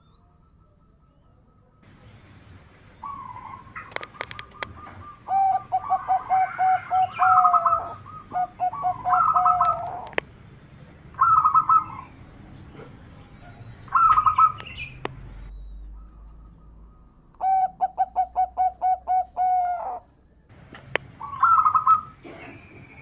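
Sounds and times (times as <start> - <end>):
doves cooing: 1.9 - 15.2, 15.9 - 23.0
sharp clicks: 3.8 - 4.8
high chirping: 13.3 - 19.7.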